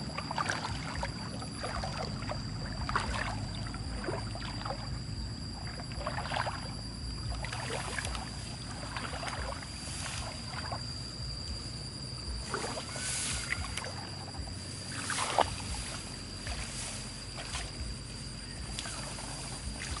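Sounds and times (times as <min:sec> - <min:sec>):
high-pitched whine: 0:00.0 - 0:20.0
hands splashing in muddy water: 0:14.9 - 0:17.8.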